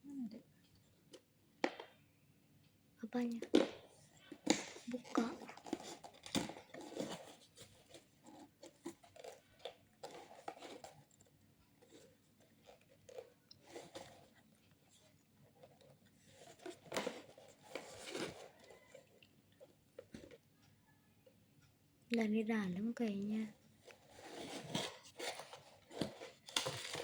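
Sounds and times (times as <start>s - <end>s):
camera handling clicks and rustles: 23.9s - 27.0s.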